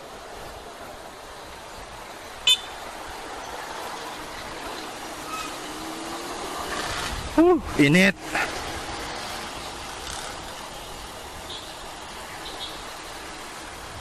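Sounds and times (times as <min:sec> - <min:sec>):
wind and road noise: 0:00.0 - 0:14.0
vehicle horn toot: 0:02.4 - 0:02.7.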